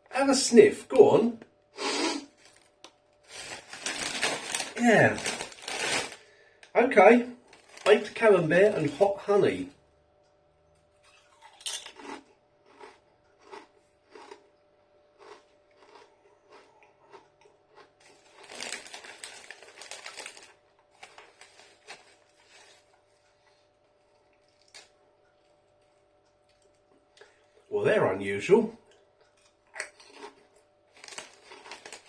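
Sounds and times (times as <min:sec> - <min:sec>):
crisps crunching while chewed: 0:01.8 - 0:06.2, 0:11.0 - 0:27.3, 0:28.9 - 0:32.0.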